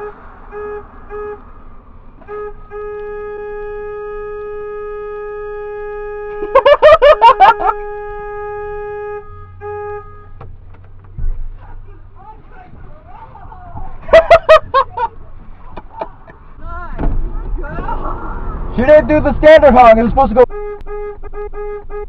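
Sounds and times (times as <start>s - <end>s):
car horn tooting: 0.0s - 1.6s, 2.2s - 12.8s, 18.7s - 22.0s.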